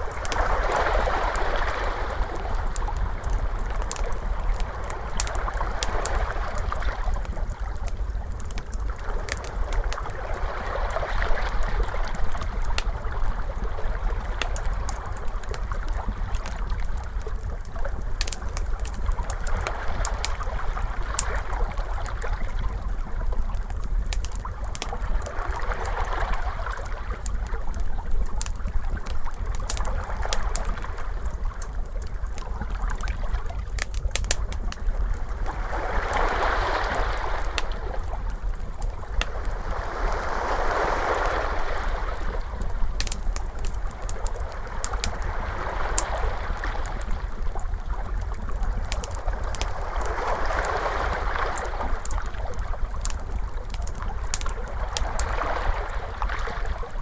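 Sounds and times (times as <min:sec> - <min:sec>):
ocean waves washing in: 0:00.0 - 0:07.2, 0:35.3 - 0:47.4, 0:49.1 - 0:52.6
wood fire crackling: 0:00.0 - 0:57.0.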